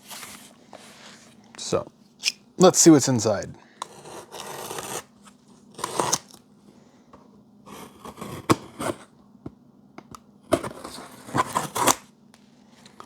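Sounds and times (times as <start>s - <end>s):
cardboard rustling and crinkling: 0.0s - 1.4s.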